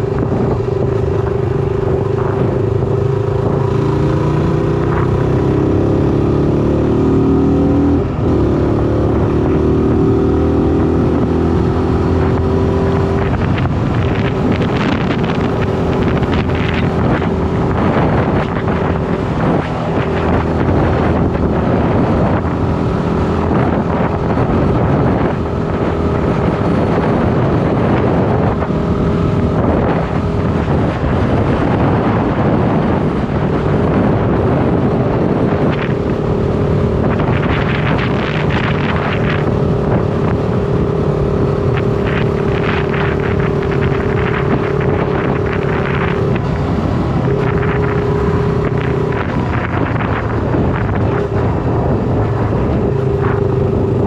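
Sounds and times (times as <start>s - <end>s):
motorcycle engine running: 0.0s - 54.0s
wind noise on microphone: 0.0s - 54.0s.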